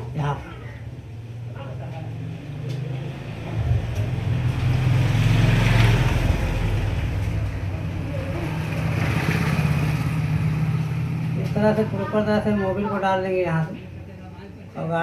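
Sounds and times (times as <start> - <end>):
traffic: 0.0 - 15.0
vehicle passing by: 1.2 - 13.0.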